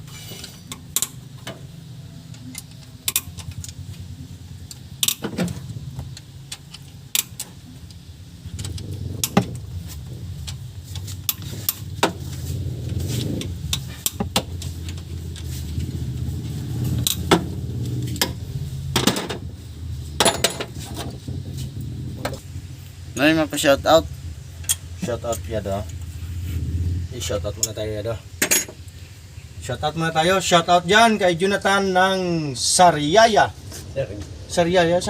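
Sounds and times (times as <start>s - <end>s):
steady low hum: 0.0s - 35.0s
metal tools clinking on engine parts: 20.2s - 21.1s, 28.4s - 28.8s.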